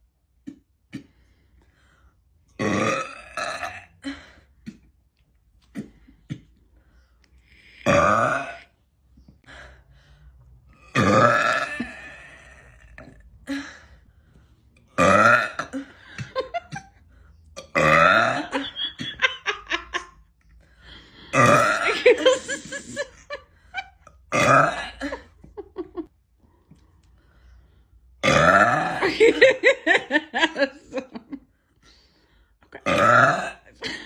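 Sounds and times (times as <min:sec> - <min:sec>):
woman burping loudly: 0:02.5 - 0:04.2, 0:07.8 - 0:08.7, 0:10.8 - 0:13.6, 0:15.0 - 0:16.0, 0:17.6 - 0:19.6, 0:21.3 - 0:23.1, 0:24.3 - 0:25.4, 0:28.2 - 0:29.8, 0:32.7 - 0:34.0.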